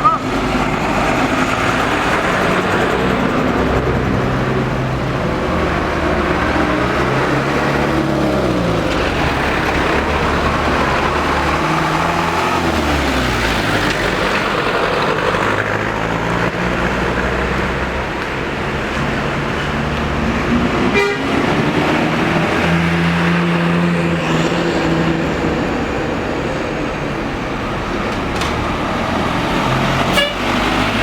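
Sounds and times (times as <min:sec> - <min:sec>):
bus diesel engines revving: 0:00.0 - 0:31.0.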